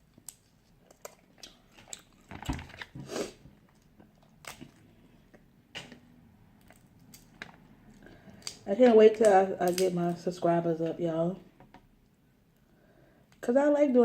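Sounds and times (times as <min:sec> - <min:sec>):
person chewing and smacking: 0:00.0 - 0:02.9.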